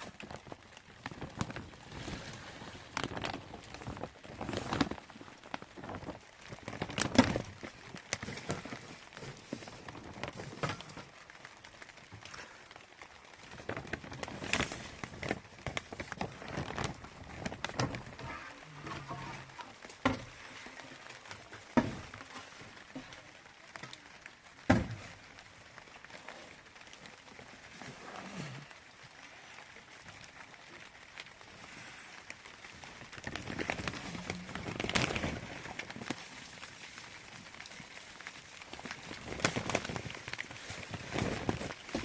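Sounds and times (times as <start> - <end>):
faint rustling: 0.0 - 42.0.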